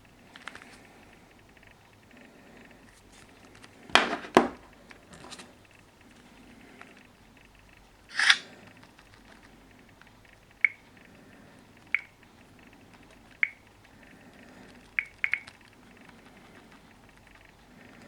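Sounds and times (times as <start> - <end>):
sharp ringing clicks: 9.6 - 14.2, 14.9 - 15.9.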